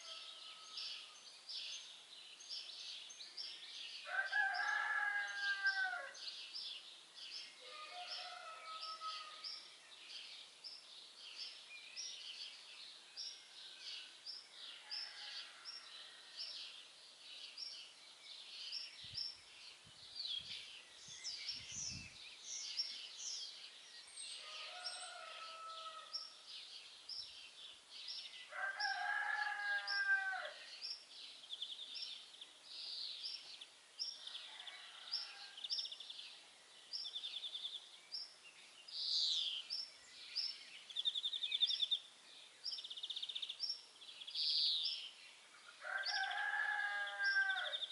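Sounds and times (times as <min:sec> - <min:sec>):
small songbirds chirping: 0:00.0 - 0:47.9
rooster crowing: 0:04.1 - 0:06.2, 0:07.6 - 0:09.4, 0:24.4 - 0:26.2, 0:28.5 - 0:30.6, 0:34.5 - 0:35.7, 0:45.8 - 0:47.9.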